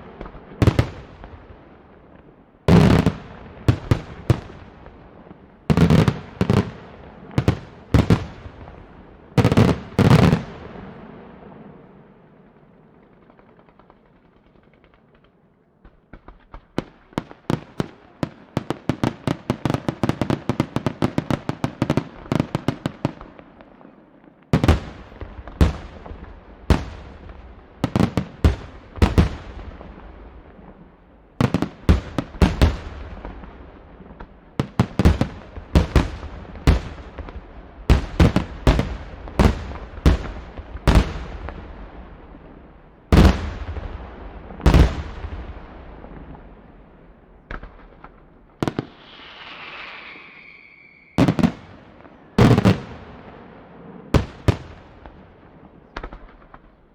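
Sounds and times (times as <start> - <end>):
fireworks cracking: 0.0 - 11.7, 12.6 - 56.8
deep firework booms: 24.6 - 50.0, 51.1 - 56.7.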